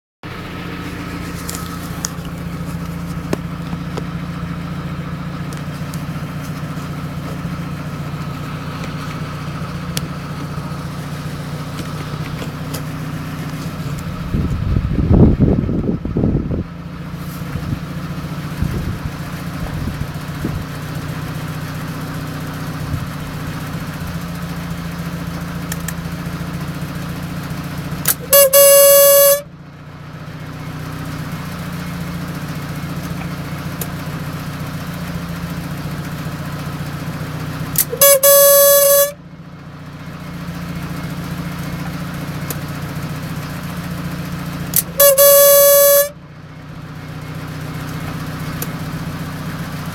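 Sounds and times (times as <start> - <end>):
loud horn-like hoots: 28.1 - 29.5, 37.8 - 39.2, 44.8 - 46.2.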